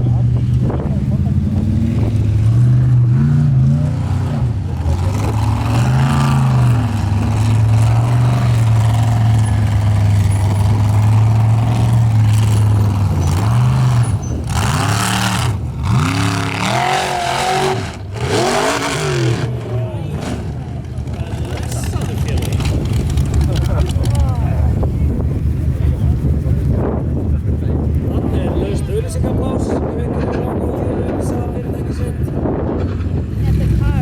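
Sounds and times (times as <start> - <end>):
race car engine revving: 0.0 - 29.9.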